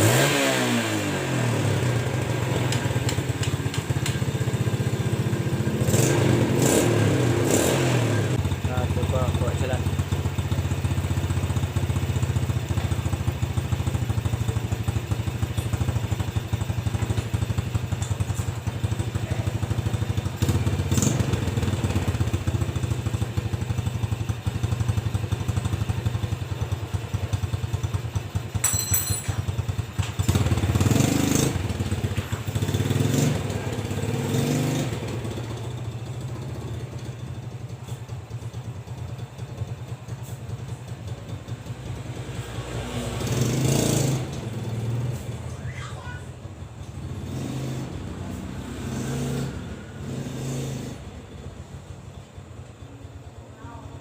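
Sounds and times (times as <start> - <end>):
motorcycle engine idling: 1.5 - 6.0, 8.2 - 34.3, 35.0 - 42.3, 51.0 - 54.0.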